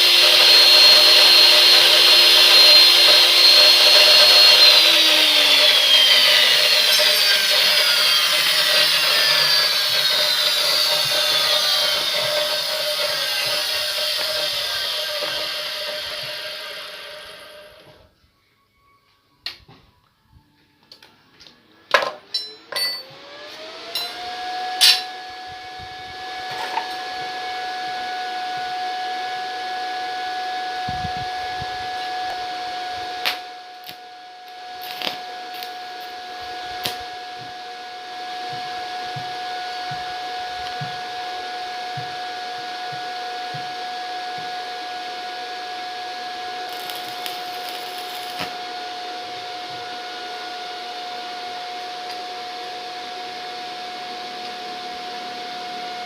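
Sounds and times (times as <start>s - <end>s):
welding machine fan whine: 0.0s - 18.1s, 22.3s - 56.0s.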